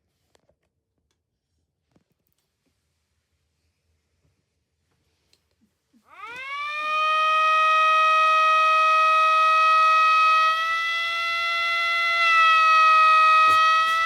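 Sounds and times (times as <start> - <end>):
air raid siren wailing: 6.1 - 14.0.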